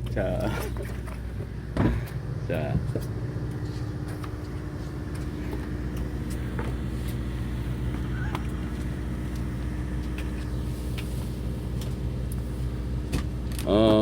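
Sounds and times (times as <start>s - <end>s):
boat engine hum: 0.0s - 14.0s.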